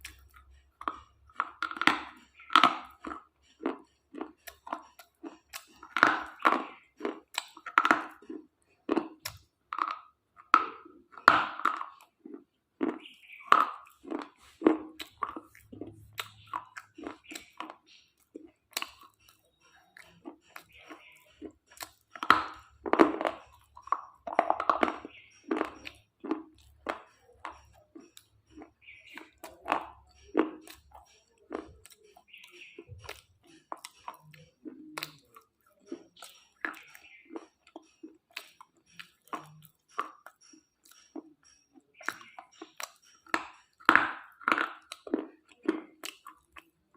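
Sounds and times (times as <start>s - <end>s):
crunching and chewing slate: 0.0s - 46.9s
slate pencils snapping and crunching: 42.0s - 46.9s.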